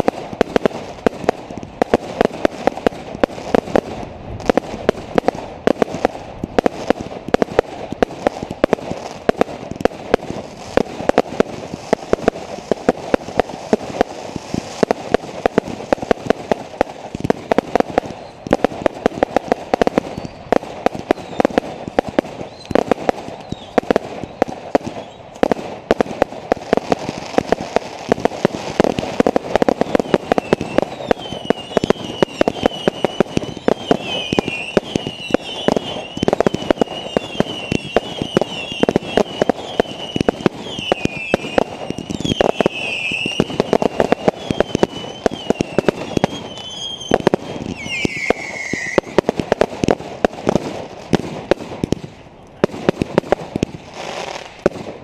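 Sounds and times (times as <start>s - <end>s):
fireworks crackling and banging: 0.0s - 55.0s
high wavering whistles: 29.8s - 49.1s.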